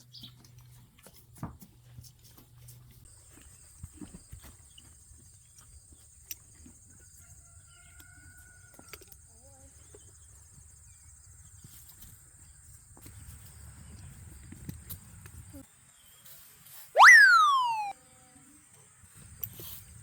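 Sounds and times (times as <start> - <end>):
short tonal call: 17.0 - 17.9.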